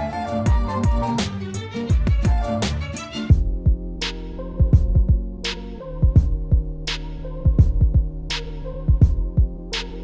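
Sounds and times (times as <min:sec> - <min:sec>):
hip-hop beat: 0:00.0 - 0:10.0.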